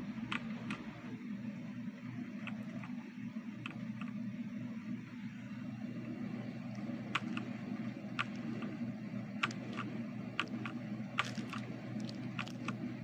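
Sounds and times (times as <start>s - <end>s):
low hum: 0.0s - 13.0s
mechanical keyboard clicks: 7.1s - 7.5s, 8.1s - 8.8s, 9.4s - 12.9s.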